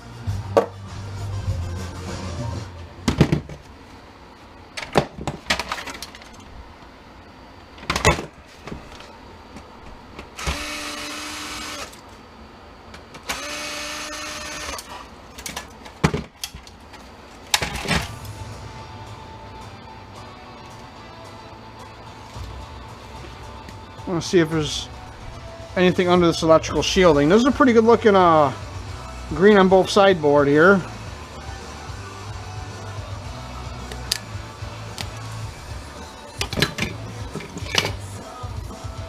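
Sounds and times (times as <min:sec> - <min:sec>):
clunks of parts being handled: 0:04.8 - 0:06.5, 0:36.4 - 0:38.1
power screwdriver motor whining: 0:10.4 - 0:12.0, 0:13.2 - 0:14.9.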